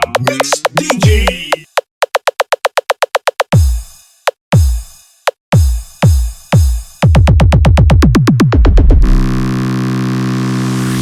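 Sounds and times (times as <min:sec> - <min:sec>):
electronic drum machine music: 0:00.0 - 0:08.8.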